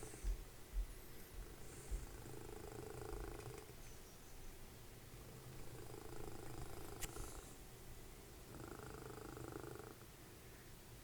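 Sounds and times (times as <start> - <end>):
cat purring: 1.4 - 3.8, 5.2 - 7.6, 8.4 - 10.0.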